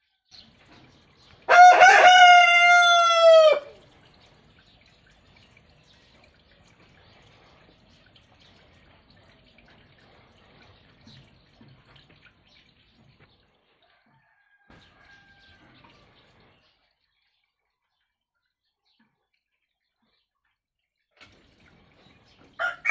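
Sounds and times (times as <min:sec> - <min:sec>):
rooster crowing: 0:01.5 - 0:03.8, 0:13.9 - 0:15.6, 0:22.6 - 0:22.9.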